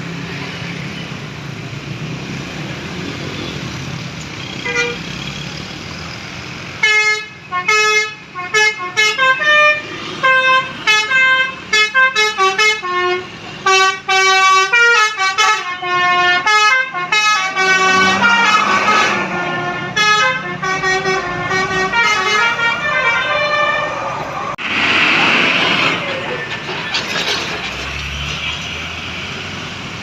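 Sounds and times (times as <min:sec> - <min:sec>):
musical air horn melody: 0:06.8 - 0:24.1.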